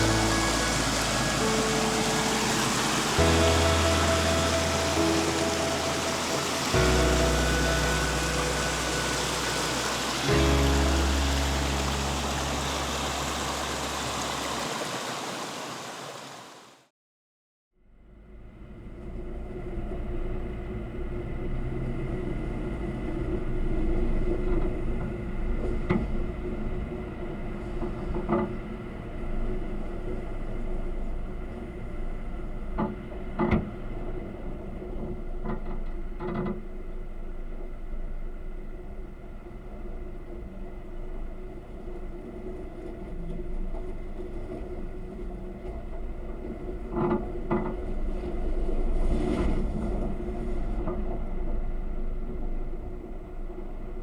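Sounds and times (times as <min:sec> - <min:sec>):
deep held low note: 0:00.0 - 0:14.6
low vehicle rumble: 0:00.0 - 0:16.4
vehicle engine and road noise: 0:00.0 - 0:16.6, 0:18.1 - 0:46.1
rushing water: 0:00.0 - 0:16.9.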